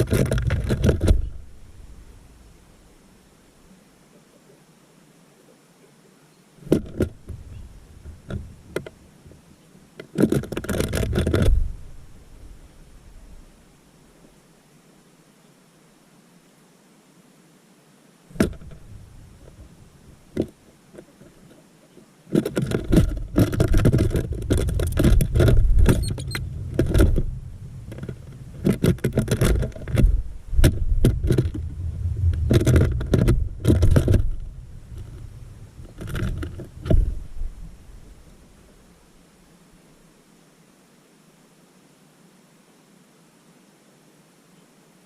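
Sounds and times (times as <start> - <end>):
heavy low rumble: 24.2 - 28.6, 30.0 - 36.0.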